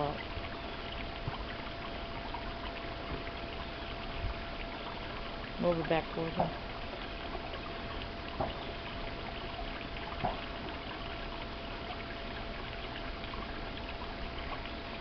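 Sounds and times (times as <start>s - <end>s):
running water trickling: 0.0s - 15.0s.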